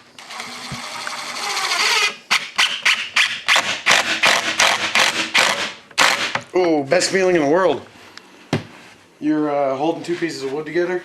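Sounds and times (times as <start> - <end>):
cordless drill driving screw into wood: 0.2 - 6.4.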